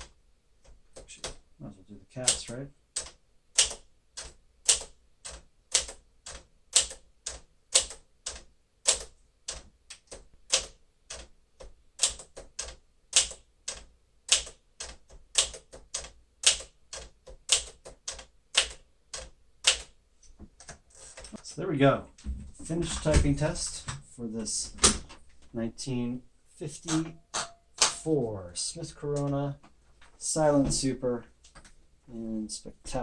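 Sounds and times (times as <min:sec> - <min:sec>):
manual typewriter typing: 0:02.2 - 0:20.0.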